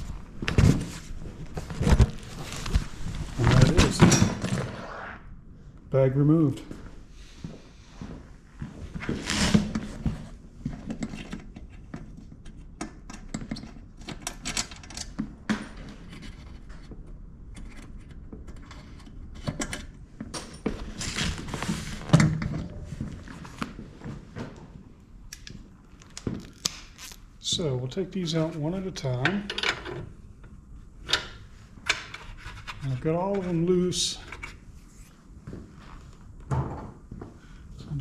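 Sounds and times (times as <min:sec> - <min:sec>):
rustling and scraping: 0:00.0 - 0:05.2, 0:20.6 - 0:24.8.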